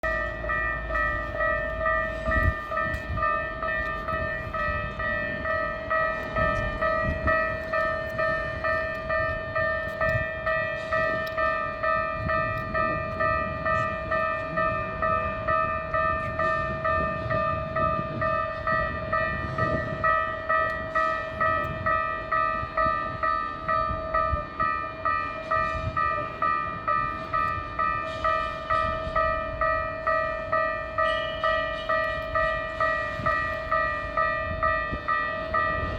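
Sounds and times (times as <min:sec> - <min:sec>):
level crossing warning bell: 0:00.0 - 0:35.9.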